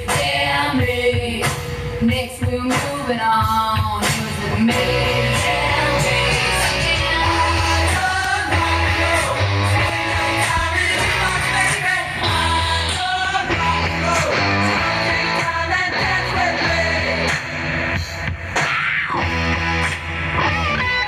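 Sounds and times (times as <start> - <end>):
rock song on radio speakers: 0.0 - 21.0.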